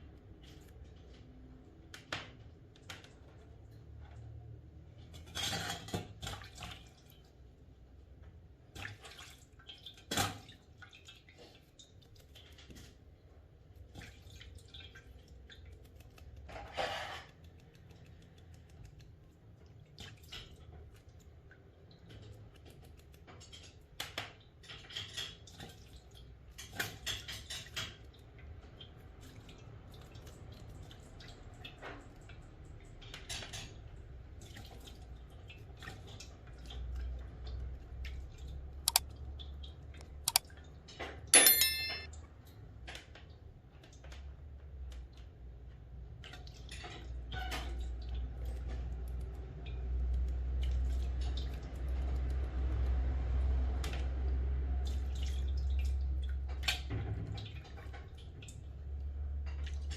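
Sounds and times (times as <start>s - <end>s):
metal parts and tools clinking: 41.4s - 42.1s.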